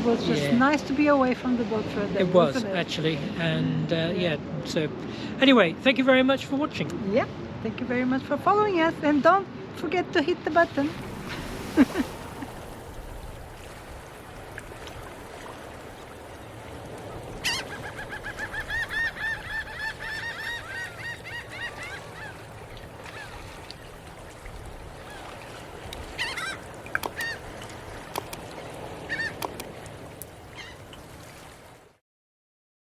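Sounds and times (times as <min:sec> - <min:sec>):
geese honking: 0:17.4 - 0:23.4, 0:26.1 - 0:27.6, 0:29.0 - 0:29.6.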